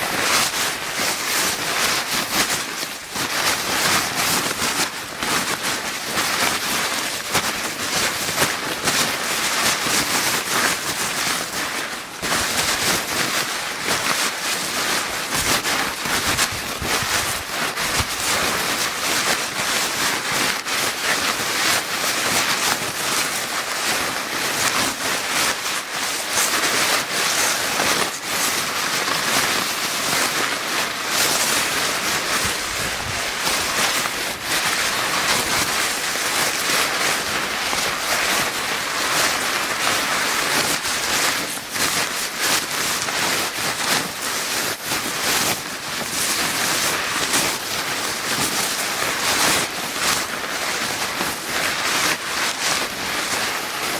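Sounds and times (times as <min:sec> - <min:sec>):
paper bag crinkling: 0:00.0 - 0:04.8, 0:12.2 - 0:22.0, 0:29.5 - 0:53.9.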